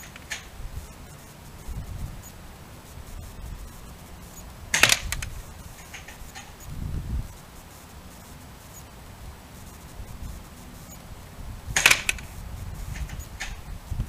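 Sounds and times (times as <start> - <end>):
airsoft rifle shot crack: 11.8 - 12.2.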